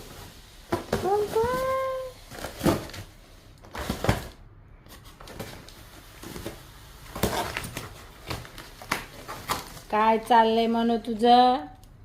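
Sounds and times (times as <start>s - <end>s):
cat tearing at cardboard box: 5.2s - 9.9s.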